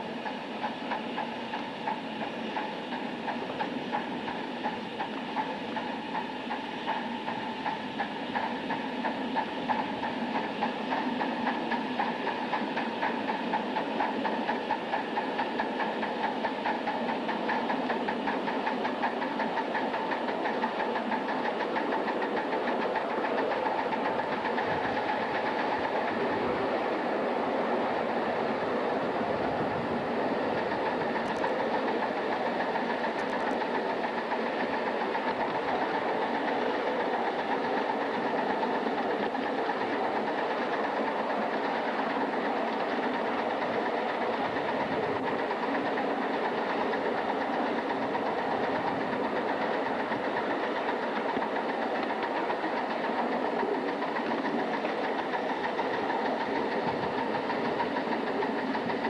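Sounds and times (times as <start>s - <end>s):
steam locomotive hissing: 0.0s - 59.0s.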